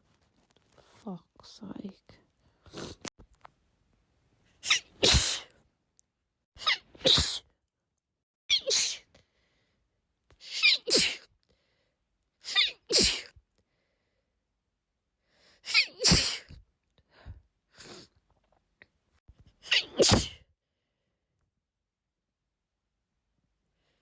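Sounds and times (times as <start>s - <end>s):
woman sneezing: 4.6s - 5.5s, 6.6s - 7.5s, 8.5s - 9.1s, 10.4s - 11.3s, 12.5s - 13.4s, 15.7s - 16.6s, 19.6s - 20.4s.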